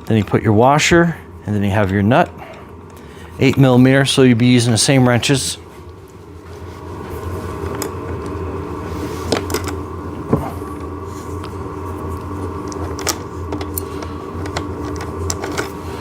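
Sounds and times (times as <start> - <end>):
low mechanical hum: 0.0 - 16.0.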